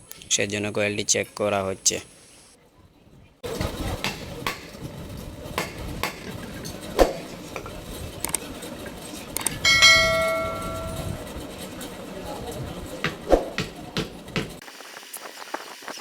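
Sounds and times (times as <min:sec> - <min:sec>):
metal fan parts knocking: 0:03.4 - 0:14.6
metal part ringing like bell: 0:09.6 - 0:11.2.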